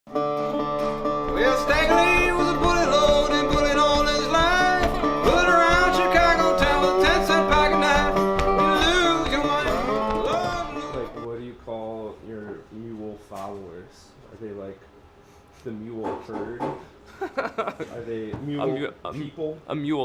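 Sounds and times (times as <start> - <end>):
country music with plucked strings: 0.1 - 11.3.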